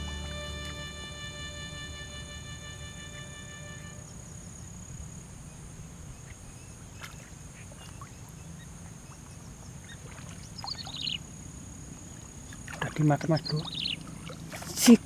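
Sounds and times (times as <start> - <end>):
steady high whine: 0.0 - 5.9
steady low rumble: 0.0 - 6.6
faint chirps and clicks: 6.2 - 11.2, 12.0 - 14.2.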